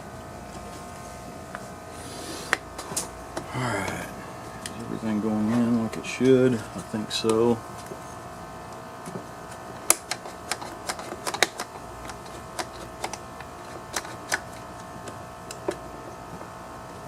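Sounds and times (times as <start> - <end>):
small parts clicking and knocking: 9.8 - 14.6.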